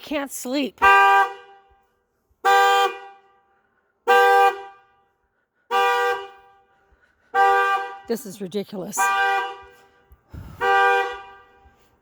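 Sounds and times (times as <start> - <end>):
car alarm horn blasts: 0.8 - 1.8, 2.4 - 5.1, 5.7 - 8.2, 8.9 - 11.9.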